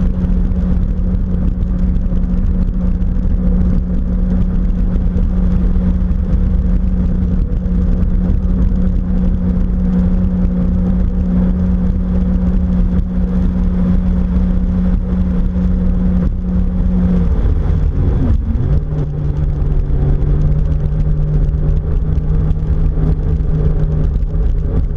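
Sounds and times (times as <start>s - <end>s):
jet ski engine running: 0.0s - 24.9s.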